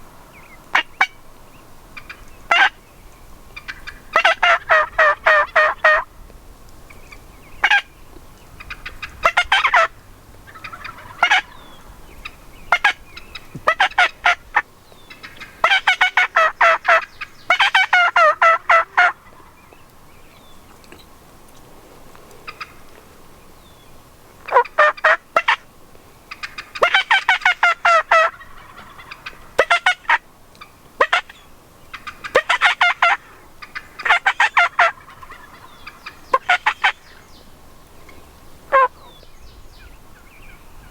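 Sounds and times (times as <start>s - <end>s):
turkeys gobbling: 2.0s - 2.8s, 3.5s - 6.1s, 7.6s - 7.9s, 8.6s - 19.8s, 22.4s - 23.0s, 24.4s - 25.6s, 26.3s - 37.2s, 38.1s - 39.2s.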